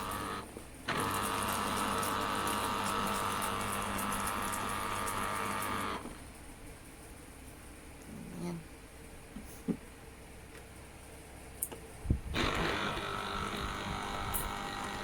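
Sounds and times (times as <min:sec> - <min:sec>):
electric juicer motor humming: 0:00.0 - 0:06.2, 0:12.3 - 0:15.0.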